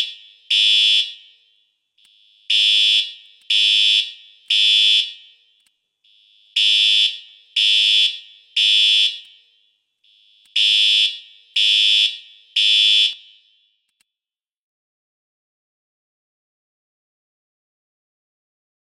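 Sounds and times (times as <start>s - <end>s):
fire alarm beeping: 0.0s - 13.9s.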